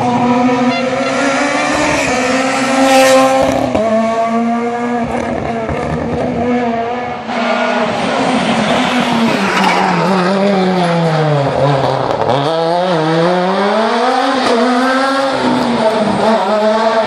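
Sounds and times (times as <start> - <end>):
rally car engine: 0.0 - 17.0.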